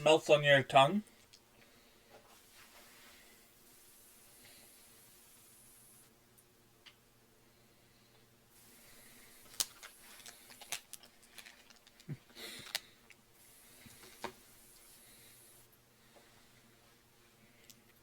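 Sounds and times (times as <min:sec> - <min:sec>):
handling rustle: 0:09.4 - 0:12.9.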